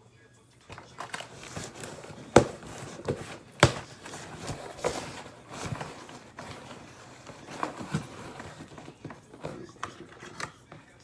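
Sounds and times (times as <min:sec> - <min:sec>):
objects knocking: 0:00.7 - 0:11.0
rustling: 0:00.7 - 0:11.0.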